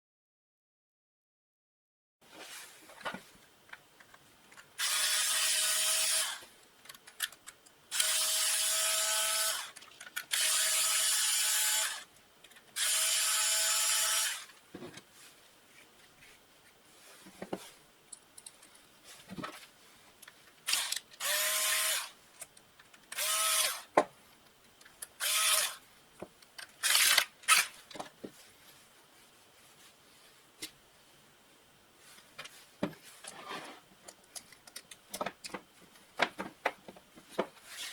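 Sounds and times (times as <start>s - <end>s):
cordless drill running: 4.8s - 6.4s, 7.9s - 12.1s, 12.8s - 14.5s, 20.7s - 22.1s, 23.2s - 23.9s, 25.2s - 25.8s, 26.8s - 27.7s.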